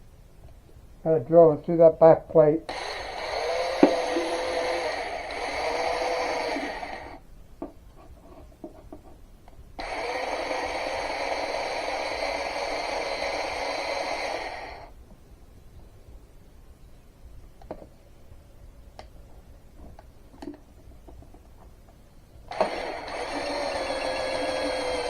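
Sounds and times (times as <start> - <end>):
electric drill boring: 2.7 - 7.2, 9.8 - 14.9, 22.5 - 25.0.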